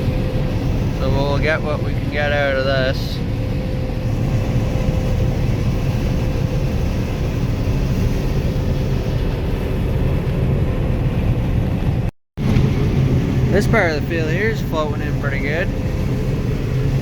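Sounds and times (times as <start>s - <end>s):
harvest machinery engine drone: 0.0s - 17.0s.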